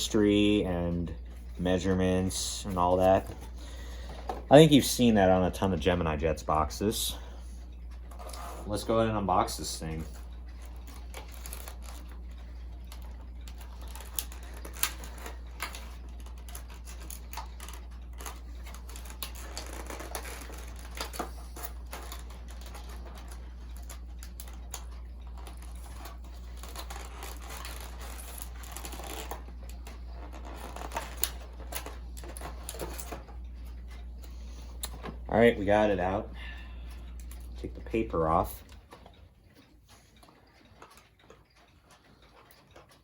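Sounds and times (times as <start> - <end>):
steady low hum: 0.0 - 43.0
cardboard and wrapping rustling: 13.6 - 24.5, 25.3 - 33.3.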